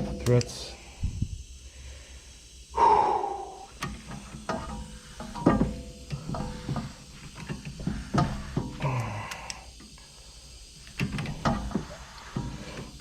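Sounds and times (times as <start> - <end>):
brake piston clicks and creaks: 3.7 - 13.0.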